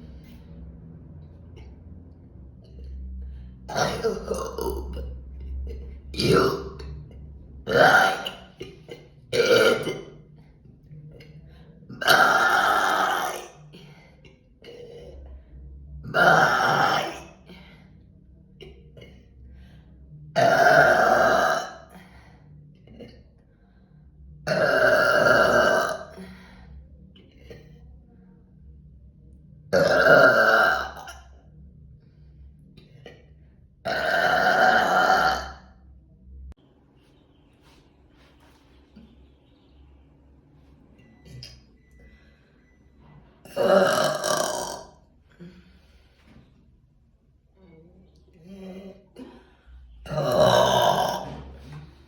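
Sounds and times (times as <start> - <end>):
woman burping loudly: 3.7 - 5.1, 6.1 - 6.9, 7.6 - 10.2, 11.9 - 13.6, 16.0 - 17.5, 20.4 - 22.0, 24.5 - 26.3, 29.7 - 31.3, 33.8 - 35.7, 43.5 - 45.6, 48.7 - 51.7.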